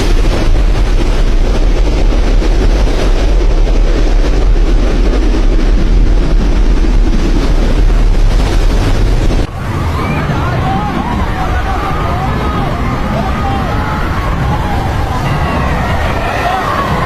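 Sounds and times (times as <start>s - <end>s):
wind buffeting microphone: 0.0s - 17.0s.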